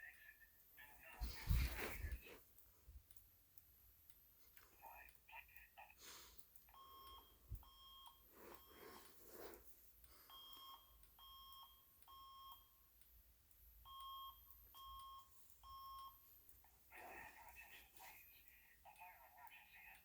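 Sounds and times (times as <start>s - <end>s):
fire alarm beeps: 6.7s - 9.2s, 10.3s - 12.9s, 13.8s - 16.3s.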